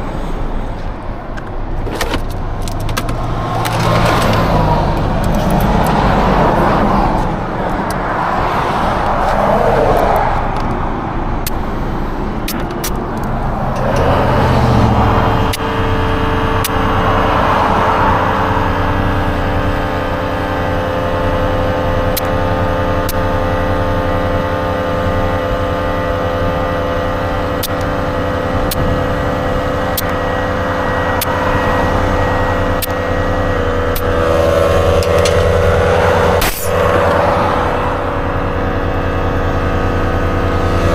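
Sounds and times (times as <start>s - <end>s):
air compressor motor running: 11.2s - 40.9s.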